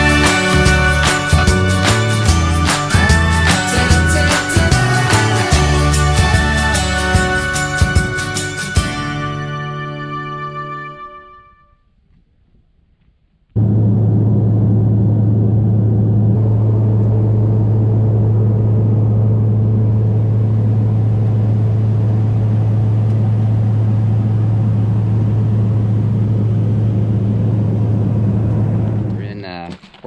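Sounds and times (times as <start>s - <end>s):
low engine drone: 0.0s - 11.3s, 13.6s - 29.5s.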